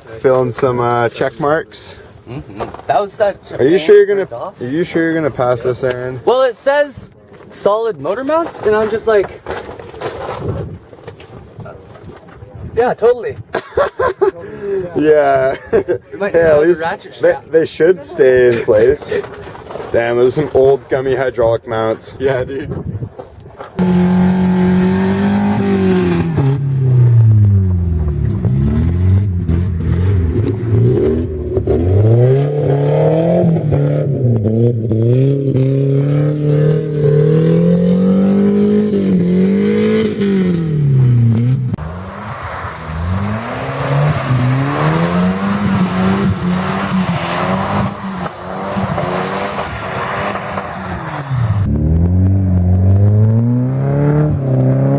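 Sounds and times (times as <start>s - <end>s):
car engine revving: 23.8s - 54.9s.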